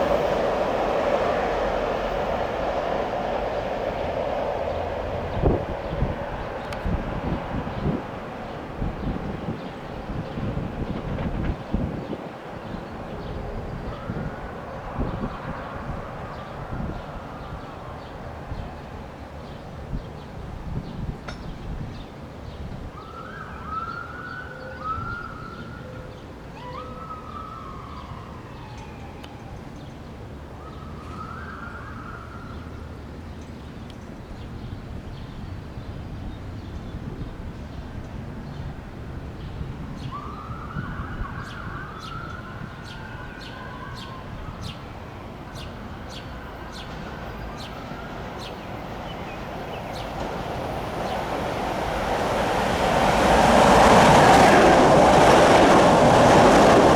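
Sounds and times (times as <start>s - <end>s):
distant siren: 0.0s - 8.0s, 13.4s - 18.3s, 22.9s - 33.0s, 39.6s - 56.9s
steady low rumble: 0.0s - 9.0s
approaching train: 0.0s - 56.9s.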